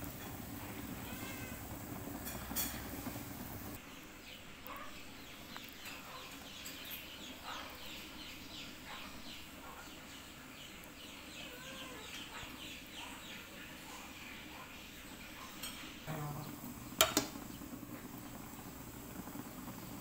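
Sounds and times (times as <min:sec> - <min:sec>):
birds chirping: 0:00.0 - 0:20.0
utensil knocking frying pan: 0:17.0 - 0:17.4.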